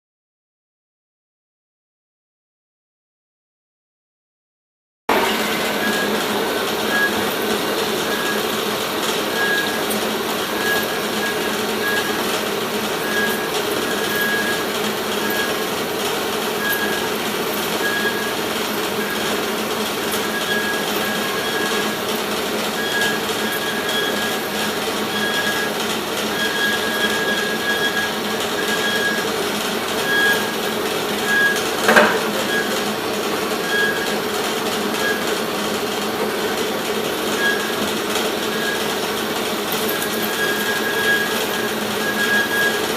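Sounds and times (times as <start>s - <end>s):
high squealing tone: 5.1s - 8.4s, 31.2s - 32.9s
band saw whirring: 5.1s - 42.9s
knock: 31.9s - 32.5s.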